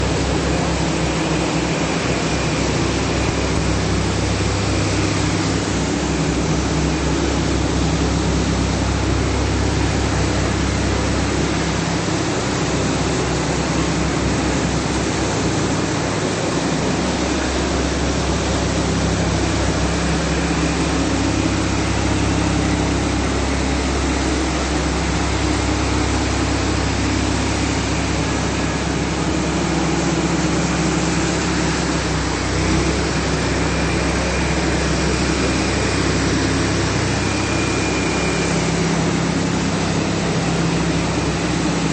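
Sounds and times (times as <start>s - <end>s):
floor-finishing machine running: 0.0s - 41.9s.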